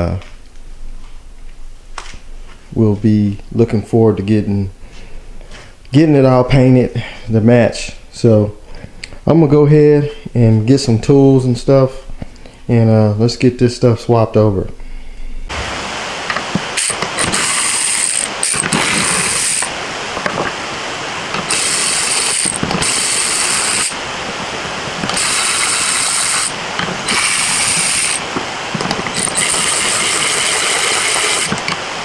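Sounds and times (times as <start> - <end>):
ratchet wrench clicking: 16.8 - 19.7, 21.3 - 24.0, 25.0 - 28.2, 28.8 - 31.8.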